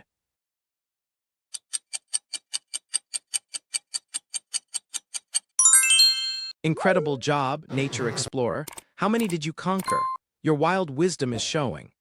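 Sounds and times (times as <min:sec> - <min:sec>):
rapid clock ticking: 0:01.5 - 0:05.5.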